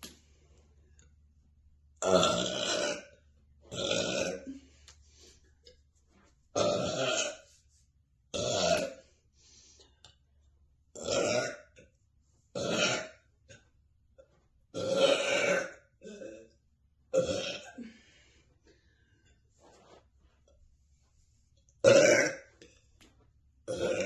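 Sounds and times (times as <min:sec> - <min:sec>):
woman burping: 0:02.0 - 0:03.1, 0:03.8 - 0:04.6, 0:06.6 - 0:07.4, 0:11.0 - 0:11.7, 0:12.6 - 0:13.2, 0:14.8 - 0:16.5, 0:17.1 - 0:18.0, 0:21.8 - 0:22.5, 0:23.7 - 0:24.0.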